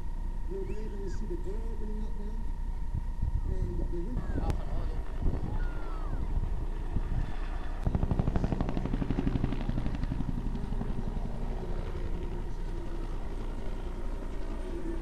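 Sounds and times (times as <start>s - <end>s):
low rumble: 1.4s - 15.0s
helicopter rotor thudding: 4.2s - 15.0s.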